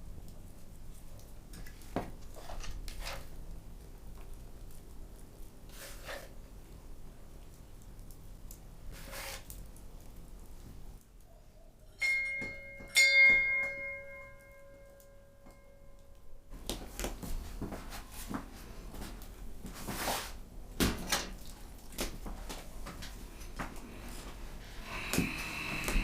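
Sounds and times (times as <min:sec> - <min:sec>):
bell-like ringing strikes: 0:11.9 - 0:16.3.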